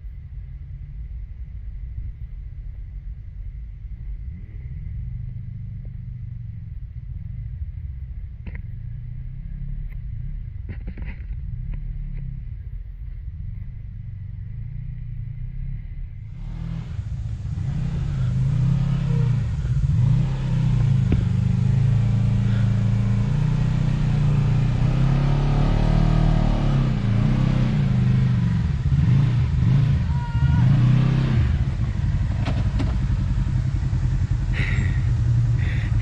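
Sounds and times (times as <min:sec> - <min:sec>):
engine revving: 0:14.7 - 0:36.0.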